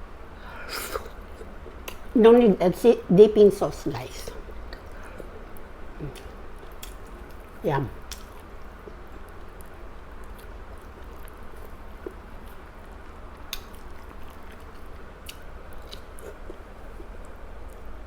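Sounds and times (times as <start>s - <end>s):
steady low hum: 0.0s - 18.0s
person chewing food: 0.6s - 2.1s, 4.2s - 17.9s
wet mouth clicks: 0.7s - 2.1s.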